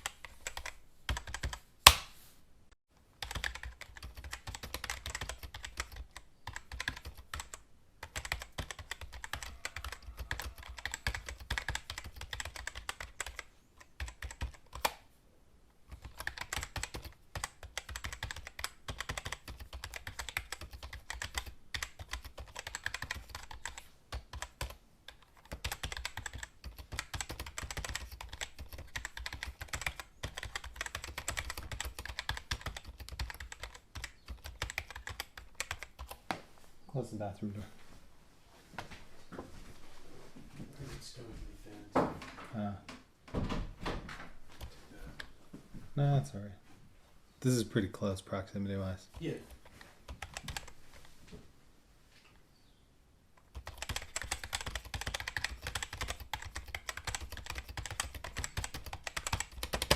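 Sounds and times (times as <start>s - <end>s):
computer keyboard typing: 0.0s - 1.6s, 3.2s - 15.0s, 15.9s - 36.2s, 49.1s - 50.8s, 53.4s - 59.9s.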